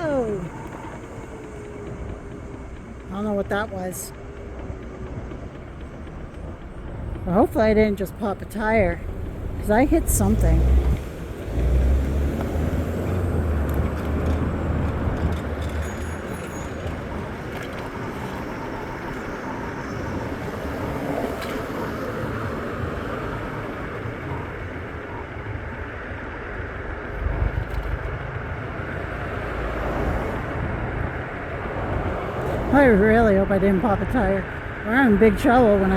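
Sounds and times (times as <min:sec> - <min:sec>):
heavy low rumbles: 0:00.0 - 0:15.6
rolling road and traffic noise: 0:00.0 - 0:35.9.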